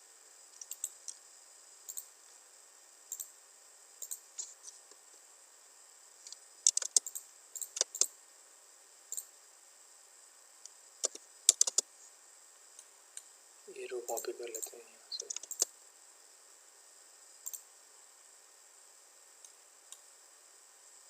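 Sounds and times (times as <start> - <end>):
computer mouse clicks: 0.6 - 1.2, 1.9 - 2.1, 3.1 - 3.3, 4.0 - 4.8, 6.2 - 8.1, 11.0 - 11.8, 14.1 - 15.7, 17.4 - 17.6
keyboard clicks: 6.7 - 8.1, 11.0 - 11.8, 14.1 - 15.7.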